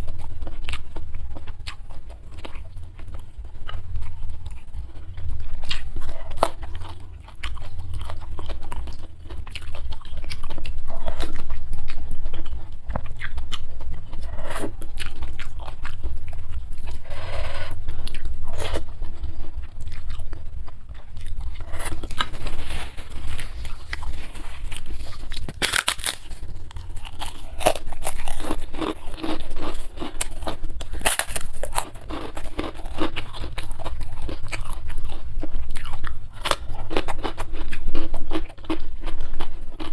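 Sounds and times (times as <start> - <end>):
crunchy chewing: 0.0 - 39.9.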